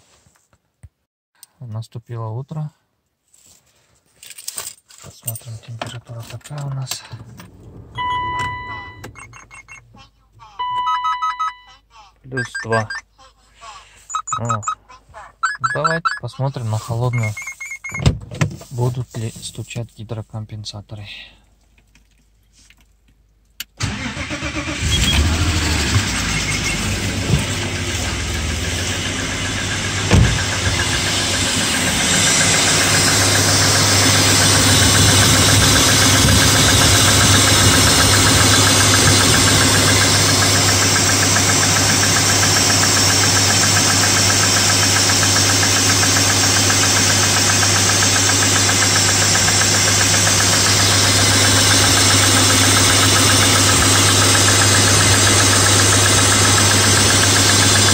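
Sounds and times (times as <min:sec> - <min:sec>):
car engine starting and idling: 0:05.7 - 0:13.0, 0:23.6 - 0:57.9.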